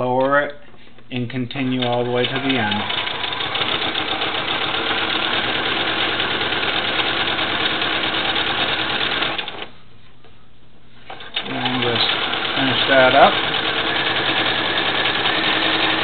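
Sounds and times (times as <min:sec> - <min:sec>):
sewing machine stitching: 0:01.6 - 0:09.7, 0:11.1 - 0:16.0.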